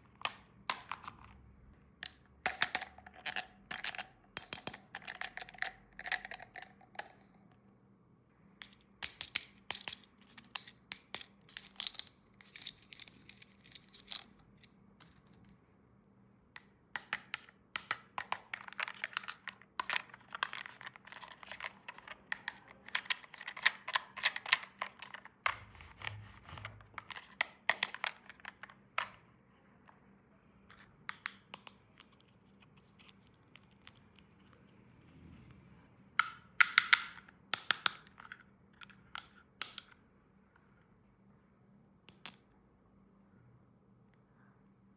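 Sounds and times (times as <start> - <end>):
plastic toy pieces clicking: 17.0 - 25.6, 27.0 - 29.2, 36.2 - 39.9.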